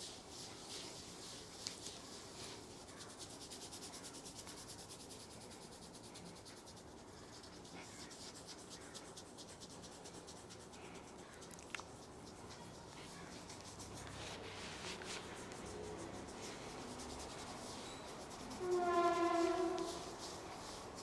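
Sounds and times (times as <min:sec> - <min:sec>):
fingers rubbing scalp: 0:06.0 - 0:21.0.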